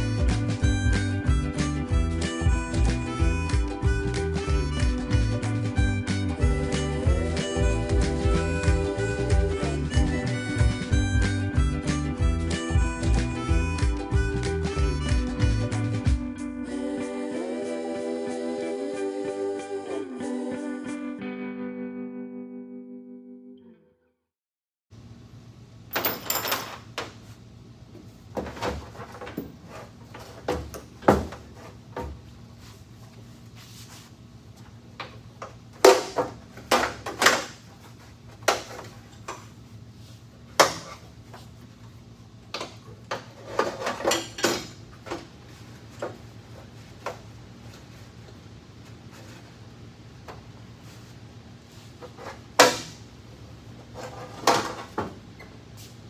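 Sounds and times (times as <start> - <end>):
tools and parts knocking and rattling: 25.9 - 27.3, 28.3 - 32.2, 35.0 - 39.5, 42.5 - 46.3, 53.8 - 55.2.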